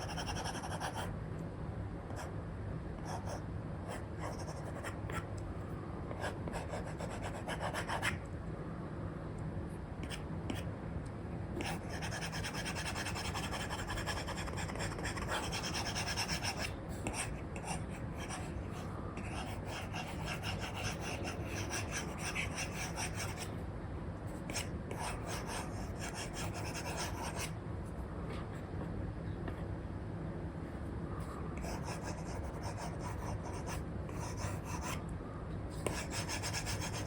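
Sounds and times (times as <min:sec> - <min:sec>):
stylus scratching on screen: 0:00.0 - 0:01.1, 0:11.6 - 0:23.5, 0:24.5 - 0:27.5, 0:31.6 - 0:35.0, 0:35.8 - 0:37.0
steady low hum: 0:00.0 - 0:37.0.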